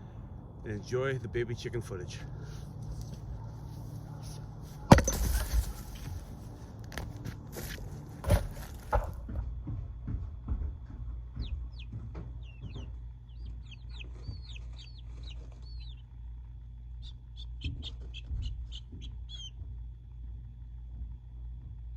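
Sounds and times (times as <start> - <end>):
steady low hum: 0.0 - 21.9
baby chicks peeping: 1.6 - 9.1, 9.7 - 21.0
knocks: 8.2 - 16.0, 17.5 - 20.0.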